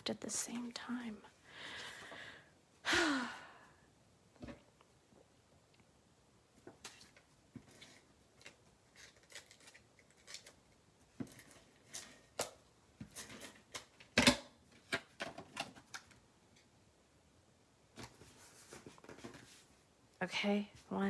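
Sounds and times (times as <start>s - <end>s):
paper rustling: 6.7s - 12.4s, 18.0s - 19.8s.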